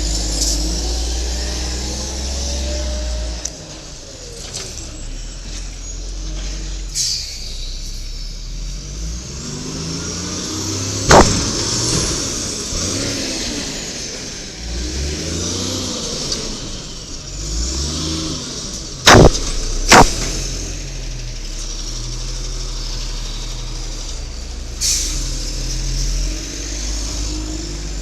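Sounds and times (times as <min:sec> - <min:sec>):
truck engine revving: 0:00.0 - 0:03.5, 0:08.8 - 0:28.0
very loud bang: 0:11.1 - 0:12.4, 0:19.1 - 0:20.7.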